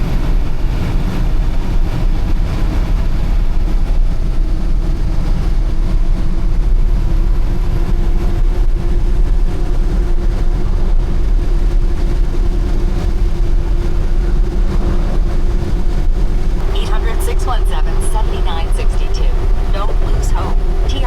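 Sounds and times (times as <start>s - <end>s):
steady hum: 16.5s - 21.0s
truck engine drone: 16.5s - 21.0s.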